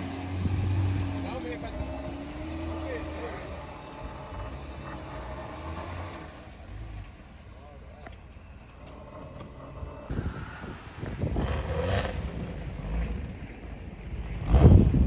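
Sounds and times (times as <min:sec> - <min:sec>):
off-road vehicle engine surging: 0:00.0 - 0:15.0
wind on microphone: 0:10.1 - 0:13.4, 0:14.1 - 0:15.0.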